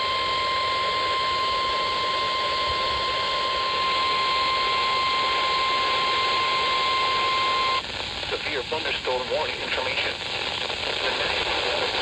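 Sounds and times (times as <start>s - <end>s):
steady alarm beep: 0.0s - 7.8s
radio static hiss: 0.0s - 12.0s.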